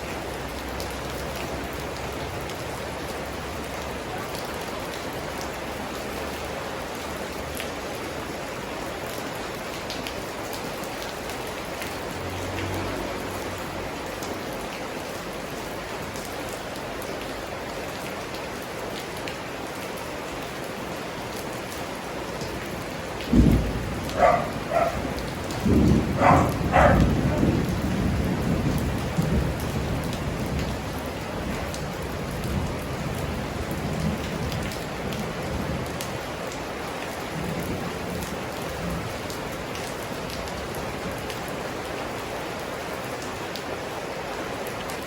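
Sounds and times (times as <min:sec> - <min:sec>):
steady rain hiss: 0:00.0 - 0:45.0
raindrops ticking: 0:21.3 - 0:36.8.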